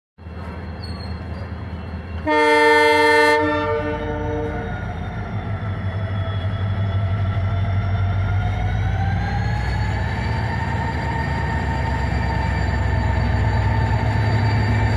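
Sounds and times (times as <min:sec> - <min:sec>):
diesel locomotive humming: 0:00.2 - 0:14.9
locomotive horn: 0:02.2 - 0:04.8.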